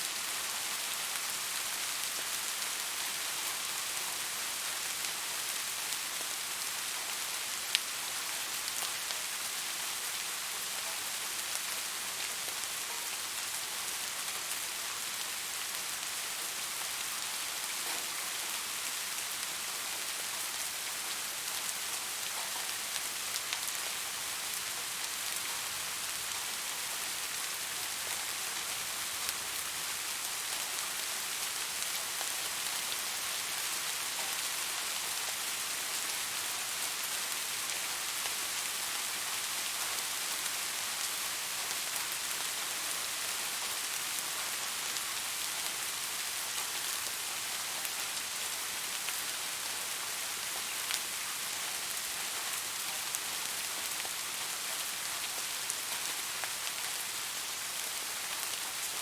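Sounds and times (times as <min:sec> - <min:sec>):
steady rain hiss: 0:00.0 - 0:59.0.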